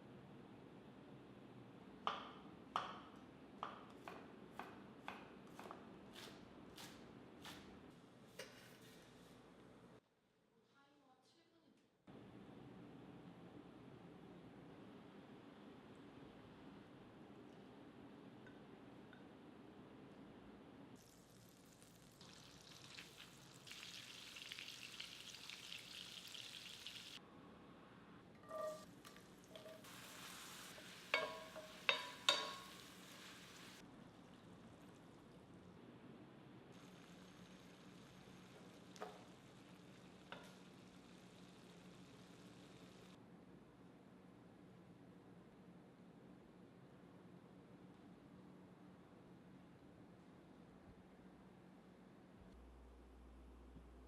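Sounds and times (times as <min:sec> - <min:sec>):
food sizzling in a pan: 0:21.0 - 0:27.2, 0:28.5 - 0:35.0, 0:36.8 - 0:43.1.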